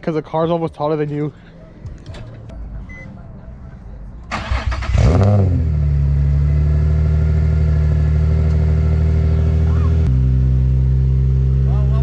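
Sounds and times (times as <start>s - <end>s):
car engine idling: 1.4s - 12.0s
car engine starter cranking: 4.3s - 5.4s.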